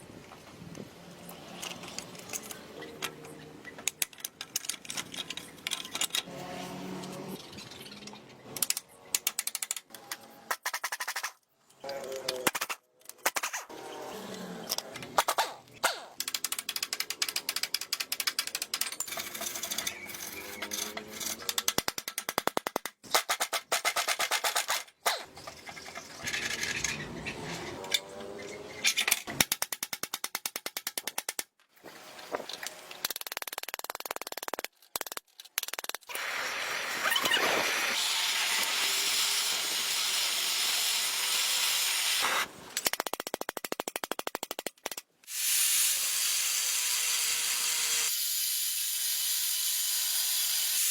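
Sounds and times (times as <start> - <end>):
rapid ratcheting clicks: 16.2 - 24.9.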